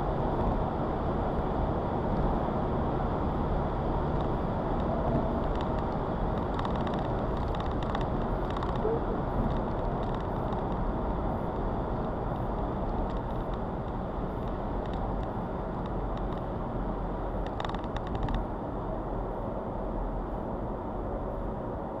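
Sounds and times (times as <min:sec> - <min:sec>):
car engine and road noise: 0:00.0 - 0:22.0
faint irregular ticks: 0:17.4 - 0:18.4.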